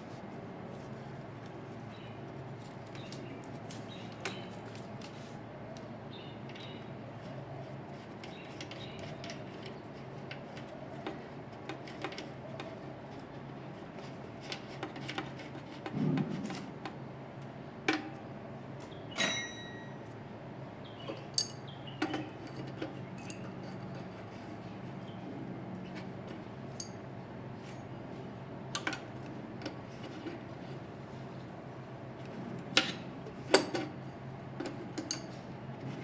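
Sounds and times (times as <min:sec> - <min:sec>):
metal tools clinking: 0:19.1 - 0:20.1, 0:21.1 - 0:24.1
sharp ringing clink: 0:19.1 - 0:20.1.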